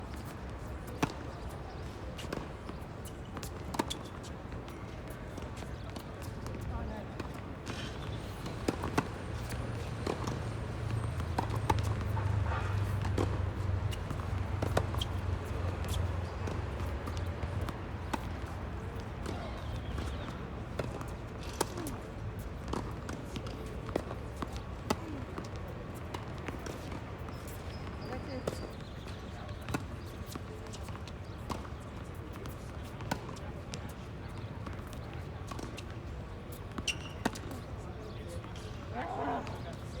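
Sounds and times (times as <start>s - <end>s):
rackets striking tennis ball: 7.2s - 22.0s.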